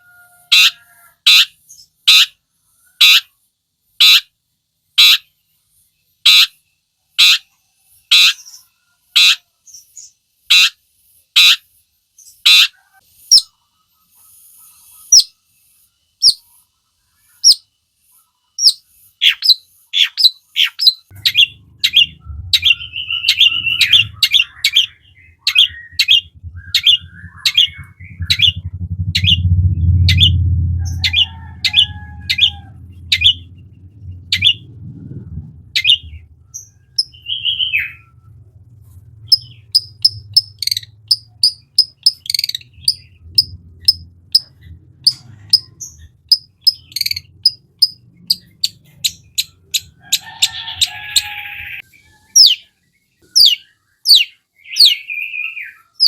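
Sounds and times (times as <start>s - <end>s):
shrike harsh calls: 21.1s - 34.7s
low rumble: 21.1s - 51.8s.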